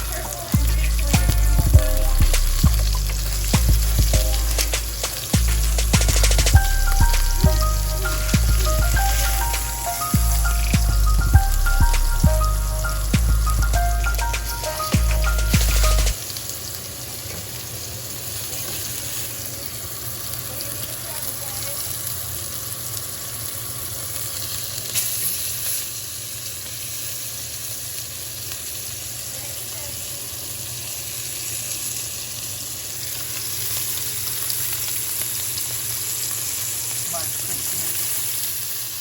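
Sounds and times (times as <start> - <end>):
meat sizzling in a pan: 0.0 - 39.0.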